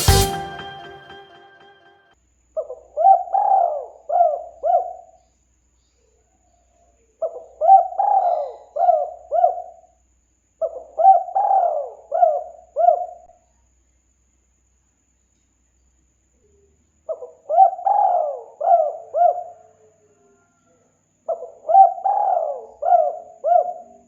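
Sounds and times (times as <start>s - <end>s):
dove cooing: 17.5s - 19.7s, 21.3s - 24.0s.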